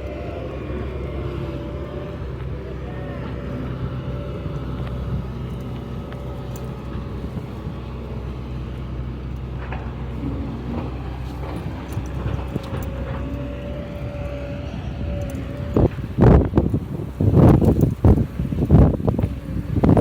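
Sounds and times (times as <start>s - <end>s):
low mechanical hum: 0.0s - 20.0s
faint clicks: 4.5s - 20.0s.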